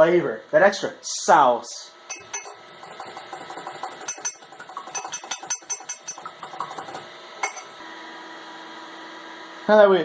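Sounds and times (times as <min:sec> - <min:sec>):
metal whisk clinking on dish: 0:02.1 - 0:07.7.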